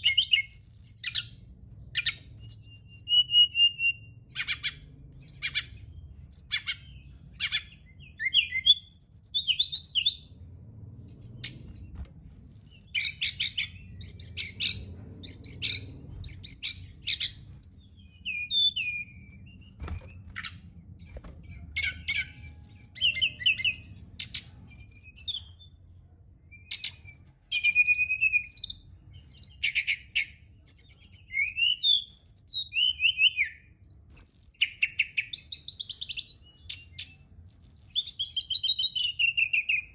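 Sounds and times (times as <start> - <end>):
faint low hum: 3.7 - 29.6
flycatcher singing: 11.4 - 25.8.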